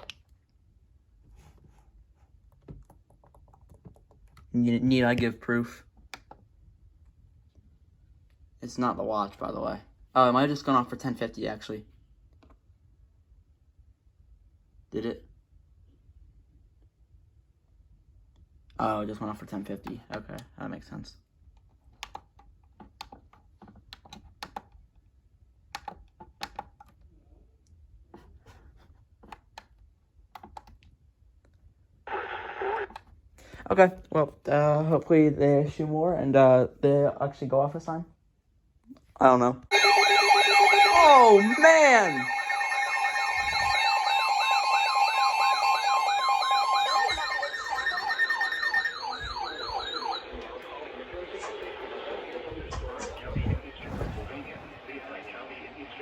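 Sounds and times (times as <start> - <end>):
steady alert tones: 39.7 - 50.7
warbling alert siren: 39.7 - 51.2.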